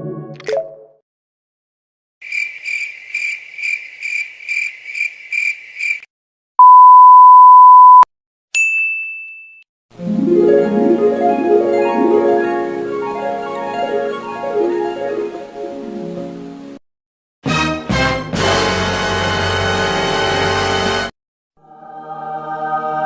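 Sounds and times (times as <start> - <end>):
censor bleep tone: 6.6 - 8.1
high chirping beep: 6.6 - 8.1
high ding: 8.6 - 9.6
plucked harp-like music: 10.0 - 15.8.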